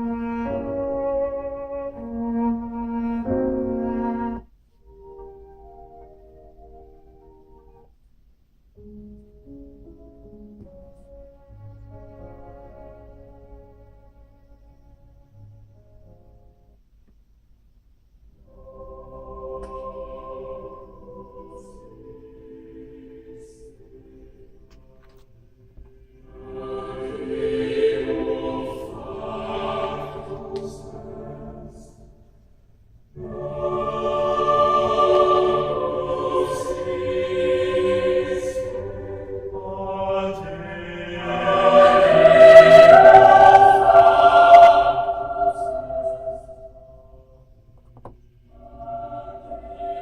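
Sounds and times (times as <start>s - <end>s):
music with sustained singing: 18.5s - 32.5s, 33.2s - 50.0s.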